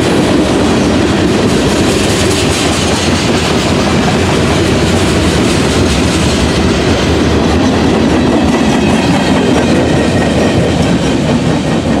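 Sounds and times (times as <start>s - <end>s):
train wheels running on rail: 0.0s - 12.0s.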